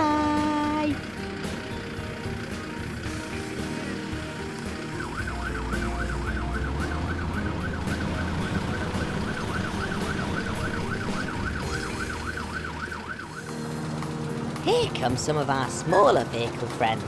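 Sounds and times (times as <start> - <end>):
background music: 0.0 - 17.0
siren in fast yelp: 4.8 - 13.6.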